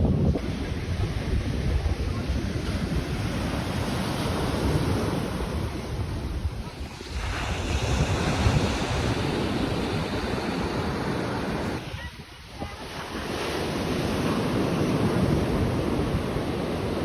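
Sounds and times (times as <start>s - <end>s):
ocean surf: 0.0s - 17.0s
wind buffeting microphone: 0.0s - 17.0s.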